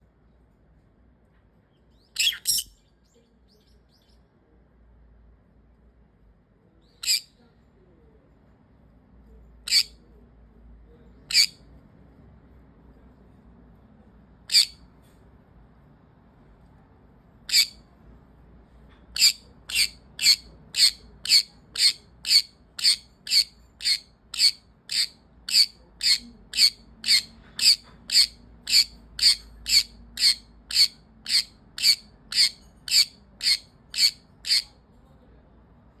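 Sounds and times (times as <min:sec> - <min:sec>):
parrot high-pitched calls: 0:02.1 - 0:02.8, 0:07.0 - 0:07.4, 0:09.7 - 0:10.0, 0:11.3 - 0:11.6, 0:14.5 - 0:14.8, 0:17.5 - 0:17.8, 0:19.2 - 0:34.8.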